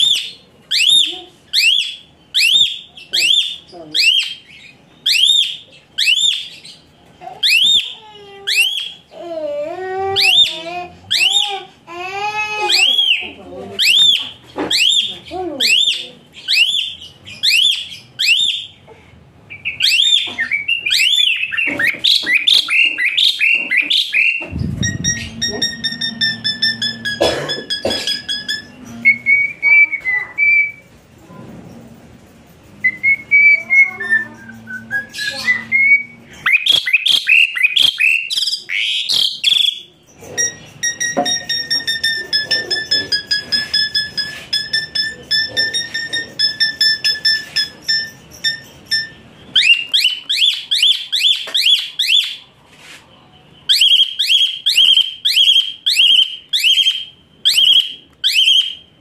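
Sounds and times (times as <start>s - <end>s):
songbird singing: 19.5s - 30.9s, 32.8s - 52.5s.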